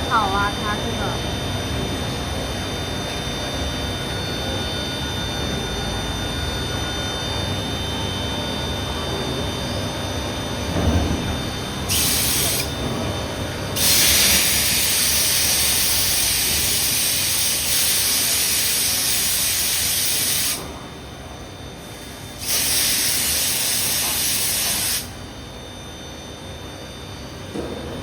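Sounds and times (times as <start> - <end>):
low machine hum: 0.0 - 28.0
spray jet hissing: 11.9 - 12.7, 13.8 - 20.6, 22.4 - 25.1.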